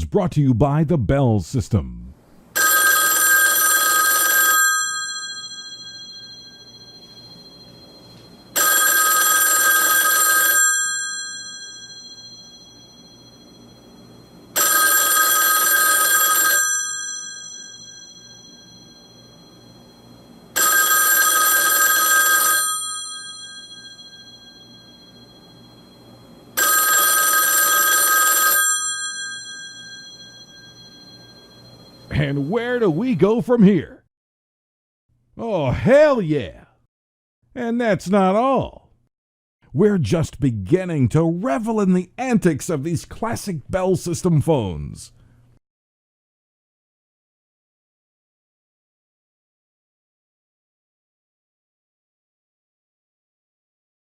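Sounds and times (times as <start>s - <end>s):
telephone bells ringing: 2.6s - 33.2s.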